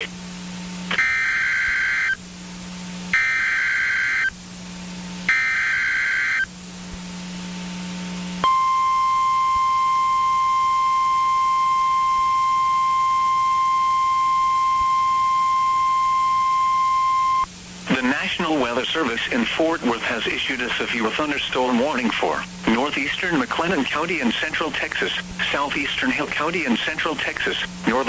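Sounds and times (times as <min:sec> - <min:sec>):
steady high alarm tone: 0:00.9 - 0:02.2, 0:03.1 - 0:04.3, 0:05.3 - 0:06.5, 0:08.4 - 0:17.5.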